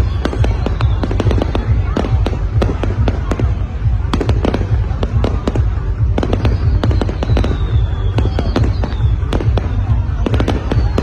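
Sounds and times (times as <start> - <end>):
fireworks bangs and crackles: 0.0 - 11.0
falling firework whistle: 6.4 - 11.0.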